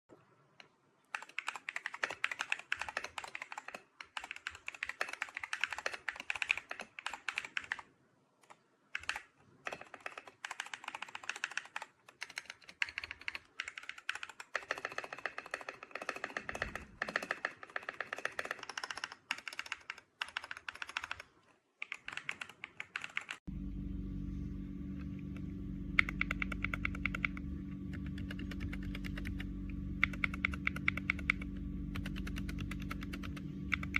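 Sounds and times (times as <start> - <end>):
rapid keyboard typing: 1.1 - 23.5, 26.0 - 33.9
steady low hum: 23.5 - 33.9.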